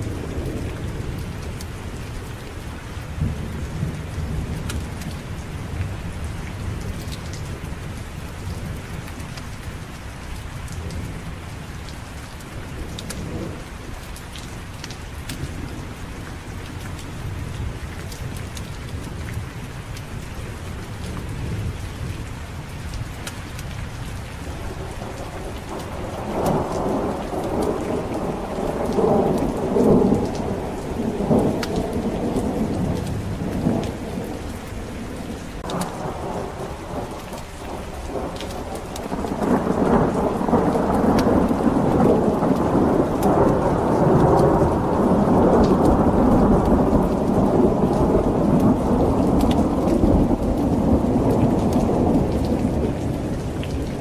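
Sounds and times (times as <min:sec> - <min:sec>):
steady rain: 0:00.0 - 0:54.0
rolling thunder: 0:24.6 - 0:54.0.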